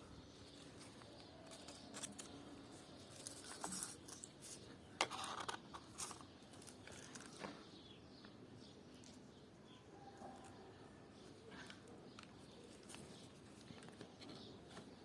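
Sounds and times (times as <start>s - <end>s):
clicks and rustles of small objects: 0.4s - 9.4s, 10.2s - 15.0s.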